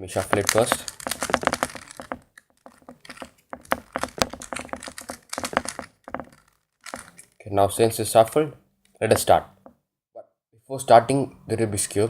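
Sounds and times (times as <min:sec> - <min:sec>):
puzzle cube clicking: 0:00.1 - 0:07.4.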